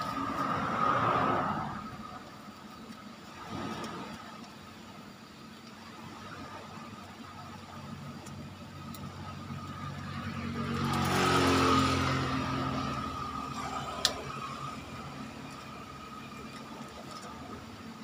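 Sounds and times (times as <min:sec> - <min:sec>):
motor vehicle passing: 0:00.0 - 0:02.3, 0:09.6 - 0:16.4.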